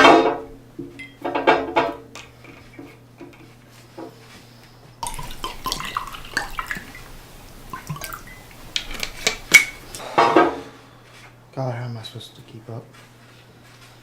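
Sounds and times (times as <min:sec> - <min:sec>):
water splashing: 0:05.0 - 0:09.9.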